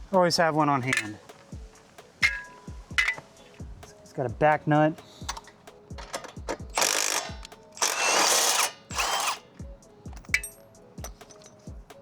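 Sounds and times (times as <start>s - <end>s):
background music beat: 0.0s - 12.0s
power tool spinning off nut: 5.2s - 9.6s.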